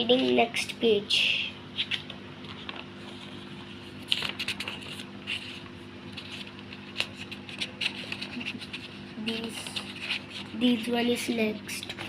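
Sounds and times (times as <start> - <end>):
steady low hum: 0.0 - 12.0
paper rustling page turned: 1.8 - 10.6.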